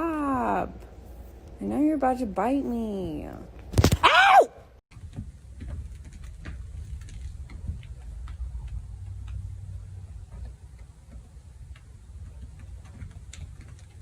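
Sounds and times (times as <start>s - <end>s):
steady low rumble: 4.9s - 14.0s.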